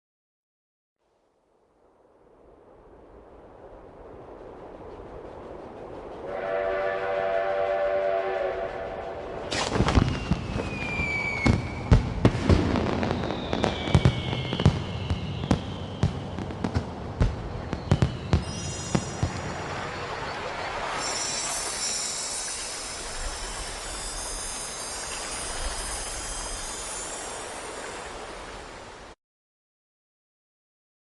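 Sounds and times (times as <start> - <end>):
steam train whistle: 6.2 - 9.6
whistling rockets: 6.3 - 28.3
fireworks bursts and pops: 9.5 - 28.0.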